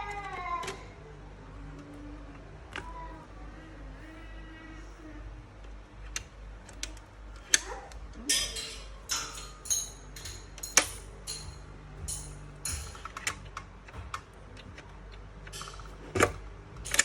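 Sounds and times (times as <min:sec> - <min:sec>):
light metallic clinks: 0:08.2 - 0:14.1.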